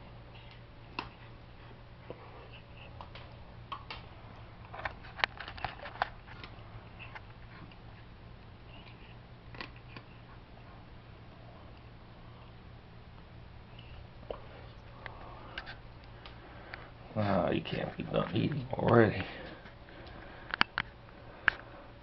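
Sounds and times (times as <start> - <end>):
cat chewing and licking food: 0.3 - 12.6.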